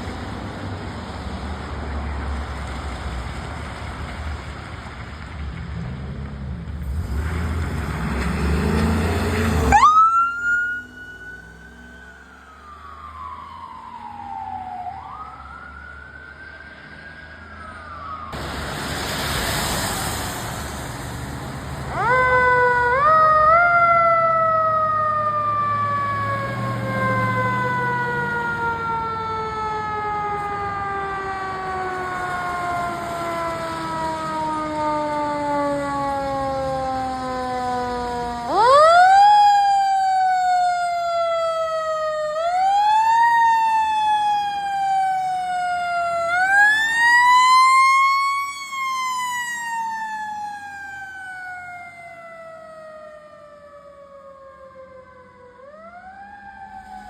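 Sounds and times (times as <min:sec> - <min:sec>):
mechanical siren wailing: 0:09.6 - 0:18.4, 0:21.9 - 0:57.0.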